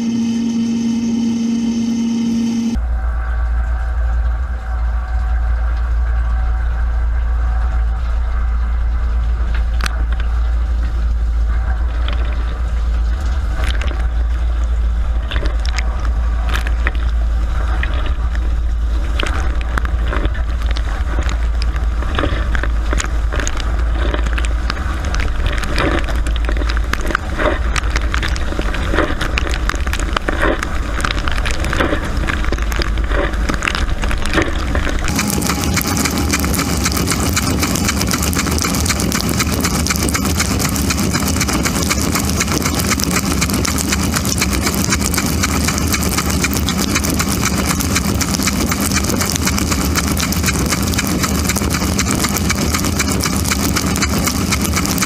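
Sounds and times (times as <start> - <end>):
dishwasher motor hum: 34.2 - 55.0.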